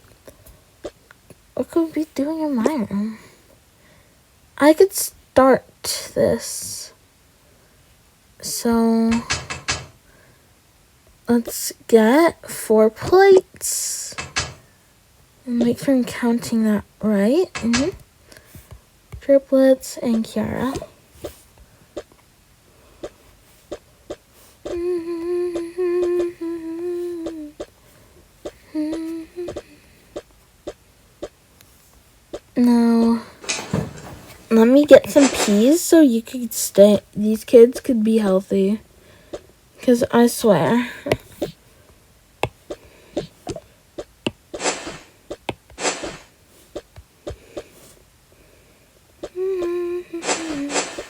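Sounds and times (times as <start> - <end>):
person humming: 24.6 - 27.7, 28.5 - 30.0, 49.2 - 51.0
short rustles: 33.1 - 35.6.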